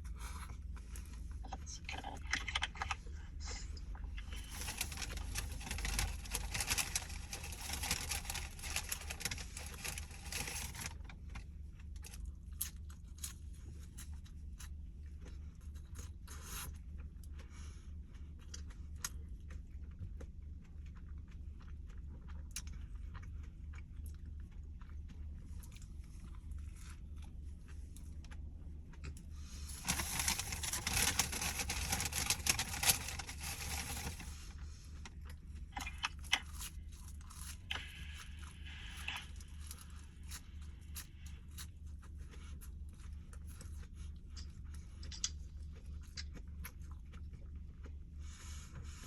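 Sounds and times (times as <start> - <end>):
chewing and biting food: 0.0 - 49.0
low steady hum: 0.0 - 49.0
small crunches and clicks: 3.9 - 17.4, 24.0 - 34.4, 35.0 - 41.8, 42.4 - 47.1
paper wrapper crinkling: 4.2 - 11.2, 29.6 - 34.5.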